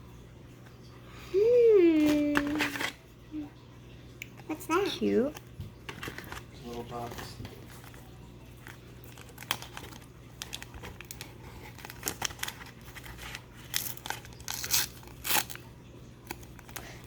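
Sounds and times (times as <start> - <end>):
packaging crinkling and tearing: 2.0 - 3.0, 5.9 - 17.0.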